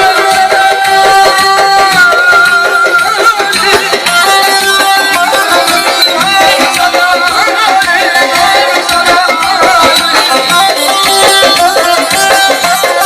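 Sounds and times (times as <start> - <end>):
dense drum beat: 0.0 - 13.0
saz playing wavering melody: 0.9 - 8.6.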